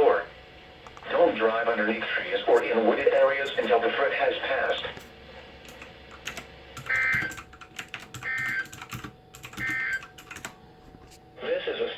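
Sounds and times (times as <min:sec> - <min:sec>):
two-tone data signal bursts: 0:06.9 - 0:07.4, 0:09.5 - 0:10.1.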